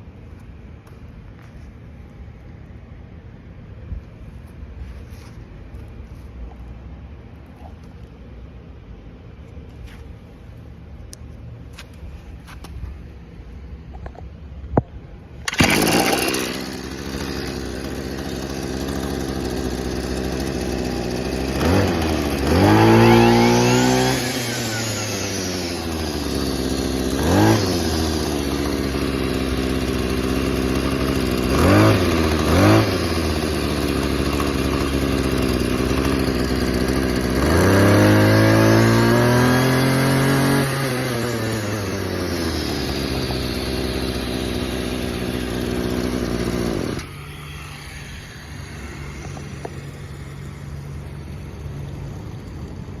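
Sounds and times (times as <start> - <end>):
brush cutter engine idling and revving: 13.8 - 53.0.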